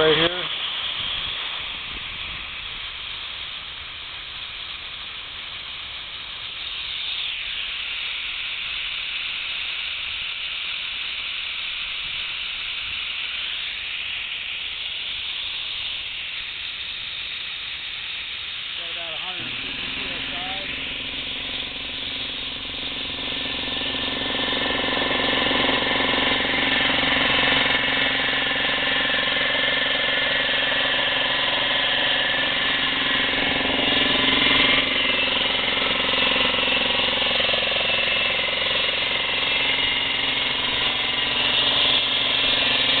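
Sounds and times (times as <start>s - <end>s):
air compressor running: 0.0s - 43.0s.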